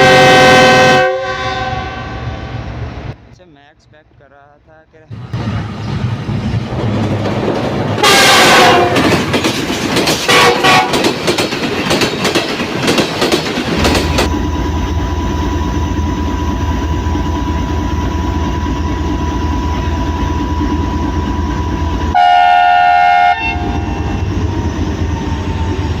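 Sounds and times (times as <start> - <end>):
locomotive air horn blast: 0.0 - 2.7, 8.0 - 9.2, 10.3 - 11.0, 22.1 - 24.3
train clattering past: 0.0 - 26.0
diesel engine rumble: 13.6 - 22.2.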